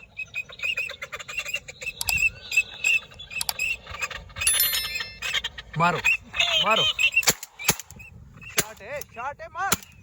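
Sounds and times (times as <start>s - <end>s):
ducks calling: 0.0s - 10.0s
sharp clicks: 2.0s - 2.2s, 3.3s - 3.6s.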